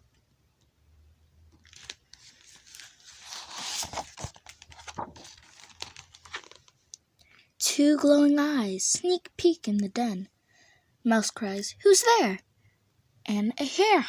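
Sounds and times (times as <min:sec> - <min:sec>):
book page rustling and turning: 0:01.5 - 0:06.9.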